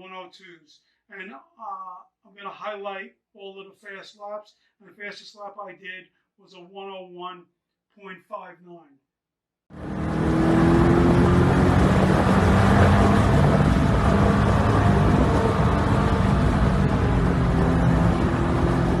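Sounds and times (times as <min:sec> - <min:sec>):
car engine running hard: 0:09.8 - 0:19.0.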